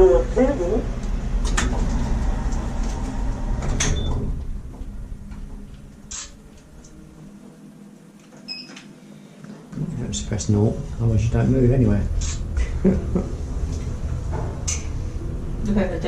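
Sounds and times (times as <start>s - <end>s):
low rumble: 0.0s - 7.4s, 9.8s - 16.0s
lift doors sliding shut: 0.9s - 7.3s, 12.1s - 15.7s.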